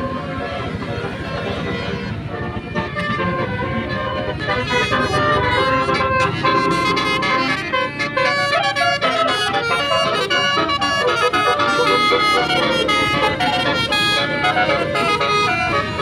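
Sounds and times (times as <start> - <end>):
bus horn playing a tune: 0.0 - 16.0.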